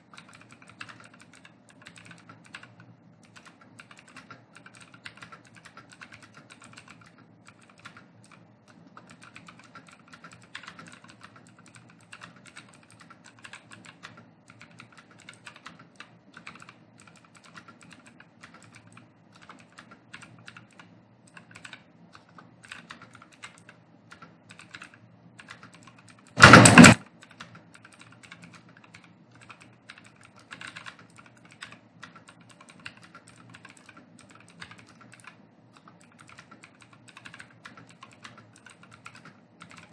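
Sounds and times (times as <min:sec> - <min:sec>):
keyboard typing: 0:00.0 - 0:39.9
loud burst: 0:26.4 - 0:27.0.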